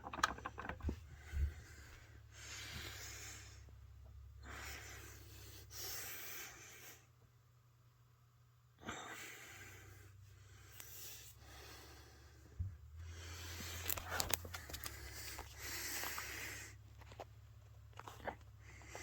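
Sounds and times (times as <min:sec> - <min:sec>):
faint breathing: 0:01.0 - 0:07.2, 0:08.8 - 0:16.9, 0:18.6 - 0:19.0.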